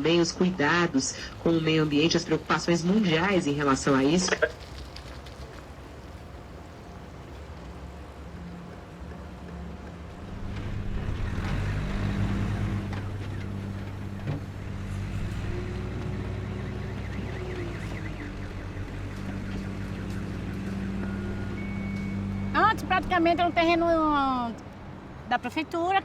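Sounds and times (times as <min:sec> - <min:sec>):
road traffic engines: 0:00.0 - 0:26.0
vehicle passing close by: 0:09.9 - 0:25.2.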